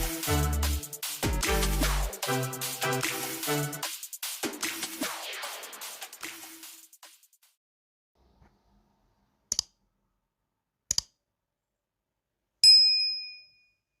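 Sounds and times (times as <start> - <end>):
double clicks: 10.9 - 11.2
bright ding: 12.6 - 13.8.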